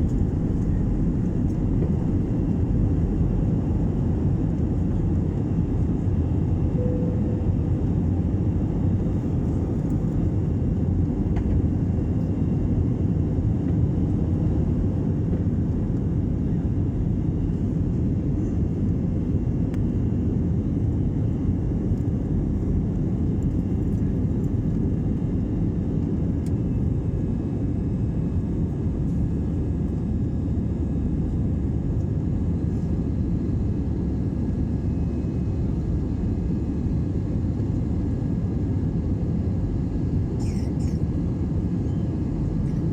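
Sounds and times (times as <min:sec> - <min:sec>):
jet engines rumbling on takeoff: 0:00.0 - 0:42.9.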